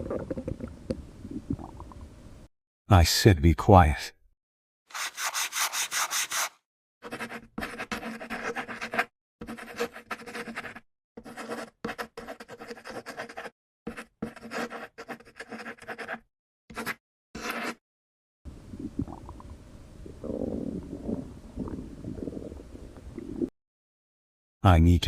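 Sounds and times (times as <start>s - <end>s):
stomach gurgling and rumbling: 0.0s - 2.2s, 18.5s - 23.5s.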